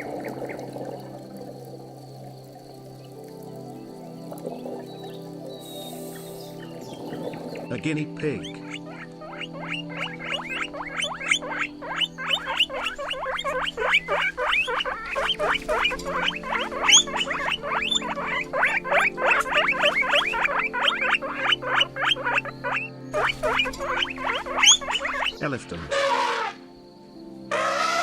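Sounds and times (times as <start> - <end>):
guinea pig squeaking: 8.4 - 25.4.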